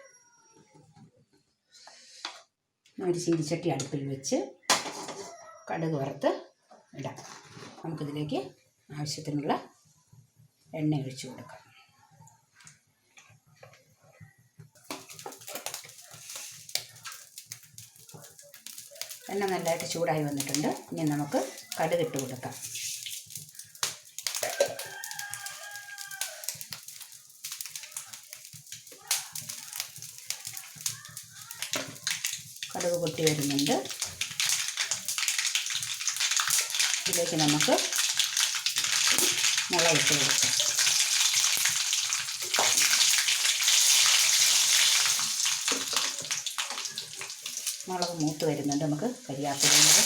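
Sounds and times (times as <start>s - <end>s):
mustard seeds popping in hot oil: 14.6s - 50.0s
rooster crowing: 24.4s - 26.6s.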